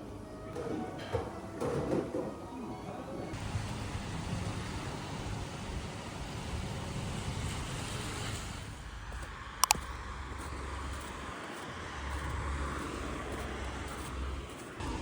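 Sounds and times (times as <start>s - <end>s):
sharp double click: 9.6s - 9.9s.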